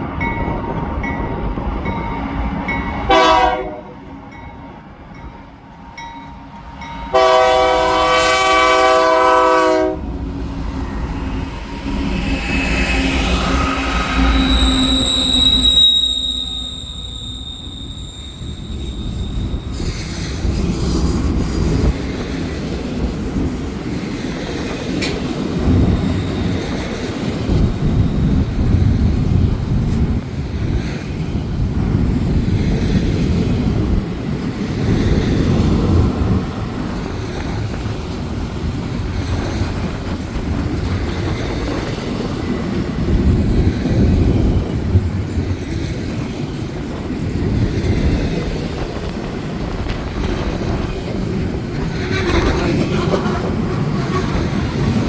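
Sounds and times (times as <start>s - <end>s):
freight train wheels rumbling: 0.0s - 55.0s
high wheel squeal: 10.6s - 20.4s.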